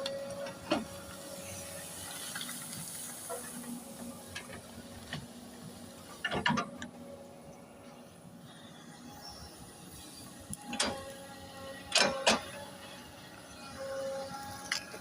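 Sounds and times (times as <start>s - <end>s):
excavator engine hum: 0.0s - 15.0s
hiss: 1.0s - 4.6s.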